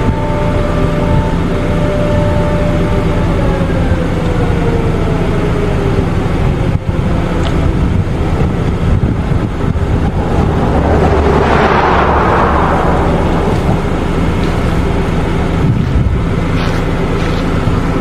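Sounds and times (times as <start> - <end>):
warning siren winding down: 0.0 - 16.4
heavy low rumble: 6.2 - 18.0.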